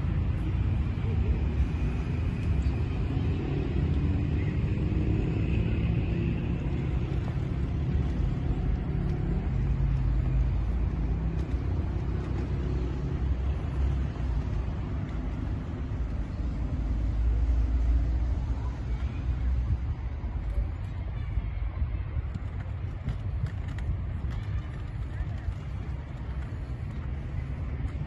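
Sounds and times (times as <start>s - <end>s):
city ambience rumble: 0.0s - 28.0s.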